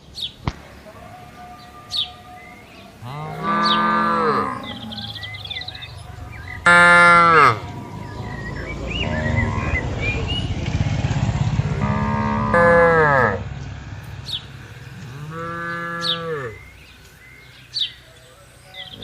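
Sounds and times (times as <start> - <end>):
small birds chirping faintly: 0.0 - 10.8, 13.5 - 19.0
cattle mooing: 1.2 - 9.8, 11.7 - 13.5, 14.6 - 16.7.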